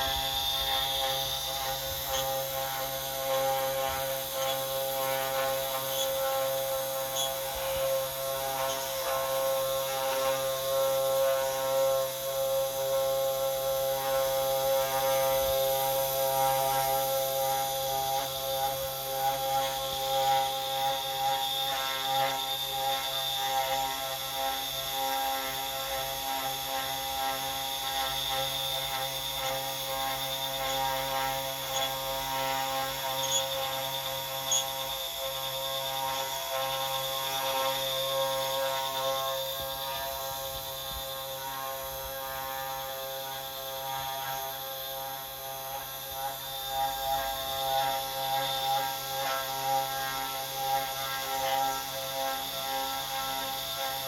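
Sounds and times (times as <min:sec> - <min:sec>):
mechanical ratcheting rattle: 0:00.0 - 0:24.3, 0:26.5 - 0:41.2
desktop router whining: 0:00.0 - 0:54.0.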